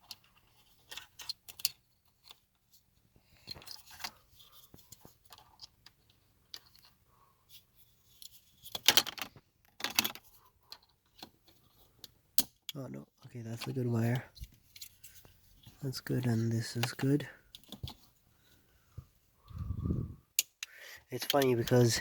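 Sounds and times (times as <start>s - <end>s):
plastic clicks and rattles: 0.0s - 2.5s, 8.2s - 12.8s, 16.8s - 18.1s.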